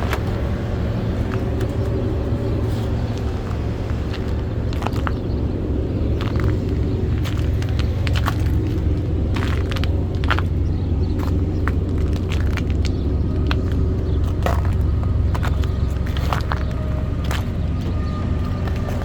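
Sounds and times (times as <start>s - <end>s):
truck engine droning: 0.0s - 19.0s.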